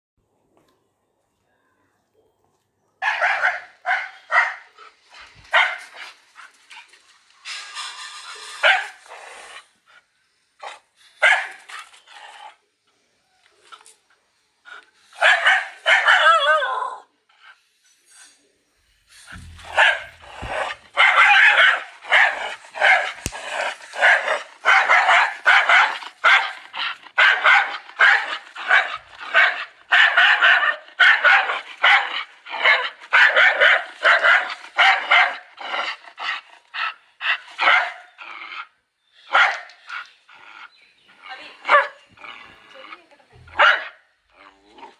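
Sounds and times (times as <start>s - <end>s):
dogs barking angrily: 3.0s - 6.6s, 8.5s - 9.8s, 10.6s - 12.0s, 15.1s - 16.6s, 19.3s - 44.9s.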